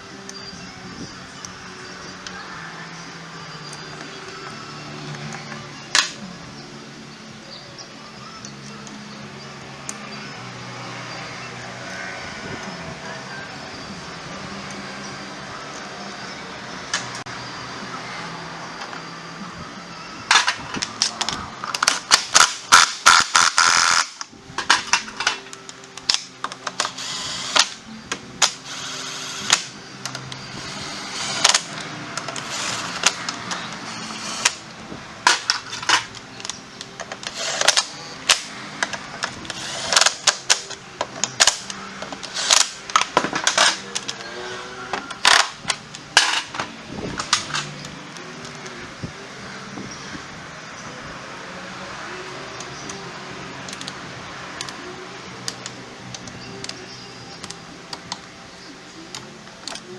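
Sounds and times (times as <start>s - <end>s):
hand tools clicking and knocking: 20.3s - 48.8s.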